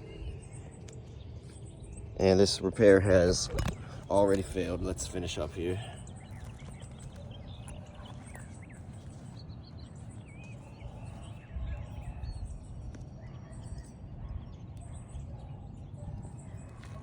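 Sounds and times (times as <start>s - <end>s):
bird chirps: 0.0s - 17.0s
wind rumble on microphone: 0.0s - 17.0s.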